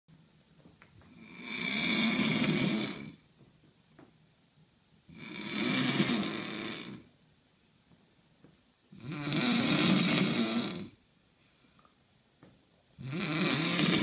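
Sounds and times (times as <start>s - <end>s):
man snoring heavily: 1.1s - 3.2s, 5.1s - 7.1s, 9.0s - 11.0s, 13.0s - 14.0s.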